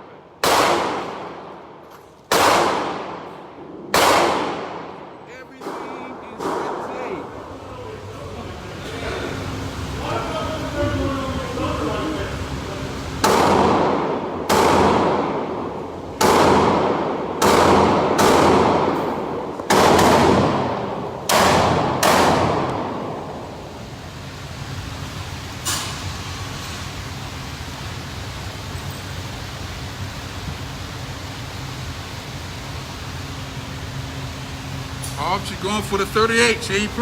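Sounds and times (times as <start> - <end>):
ventilation hum: 0.0 - 37.0
echoing gunshots: 0.4 - 6.9, 13.2 - 23.6.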